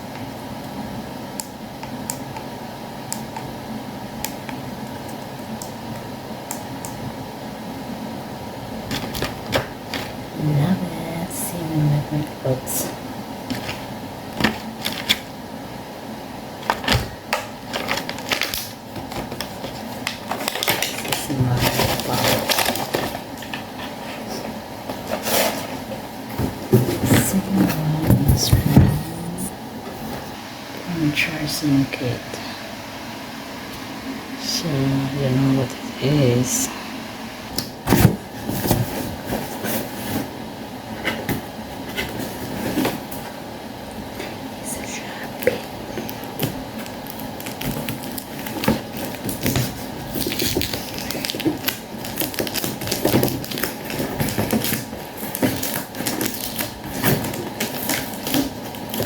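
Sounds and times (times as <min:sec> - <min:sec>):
packaging clicks and rustles: 0:13.5 - 0:15.3, 0:16.6 - 0:29.0, 0:45.4 - 0:59.0.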